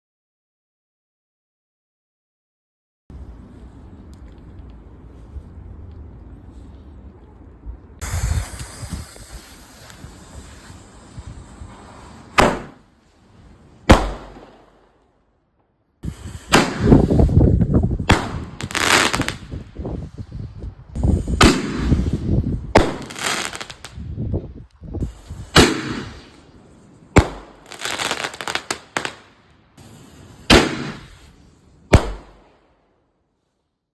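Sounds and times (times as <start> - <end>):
firework bangs: 8.0 - 12.9, 13.8 - 14.9, 16.0 - 19.8, 21.0 - 24.0, 25.0 - 32.6
crackling run of firework shots: 8.0 - 15.1, 16.0 - 32.8.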